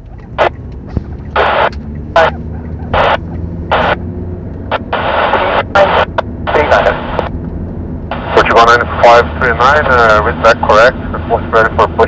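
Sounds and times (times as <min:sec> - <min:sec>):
steady low hum: 0:00.4 - 0:12.0
pilot speaking over radio: 0:01.3 - 0:04.0, 0:04.7 - 0:07.3, 0:08.1 - 0:12.0.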